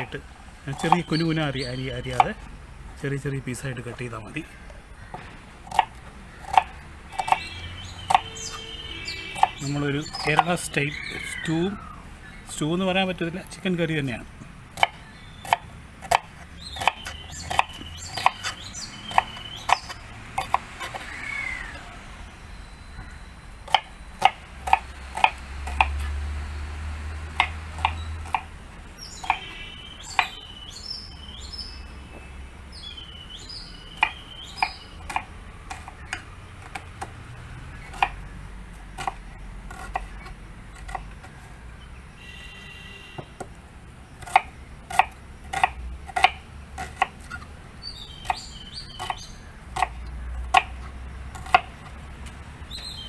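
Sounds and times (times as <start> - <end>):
small birds chirping: 0.0 - 43.4, 44.2 - 53.0
knife chopping on cutting board: 5.7 - 7.5, 9.4 - 10.5, 14.8 - 21.1.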